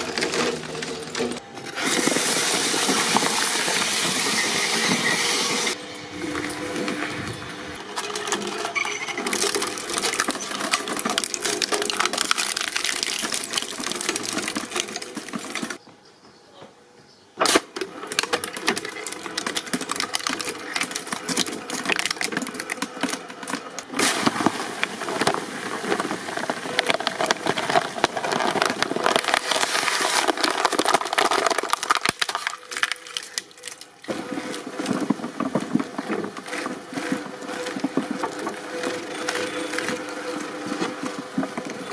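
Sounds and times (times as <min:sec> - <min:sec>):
low machine hum: 0:00.0 - 0:15.0
objects crackling in a press: 0:00.0 - 0:15.8, 0:17.4 - 0:41.9.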